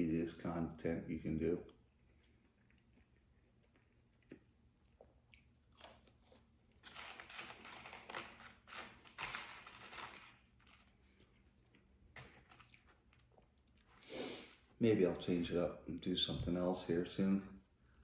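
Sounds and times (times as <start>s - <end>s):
person crunching food: 1.7s - 14.6s.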